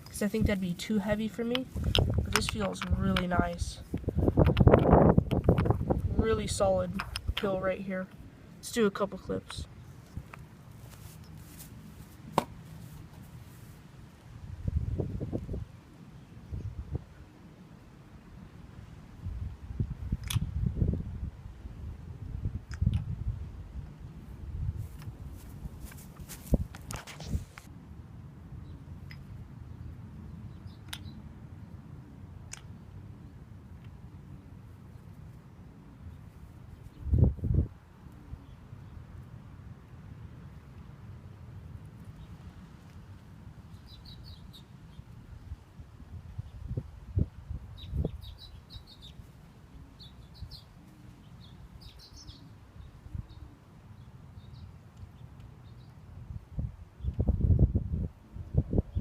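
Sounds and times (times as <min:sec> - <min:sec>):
wooden ball clacking on wood: 0:01.5 - 0:03.3
songbirds chirping: 0:05.0 - 0:13.9, 0:28.5 - 0:57.4.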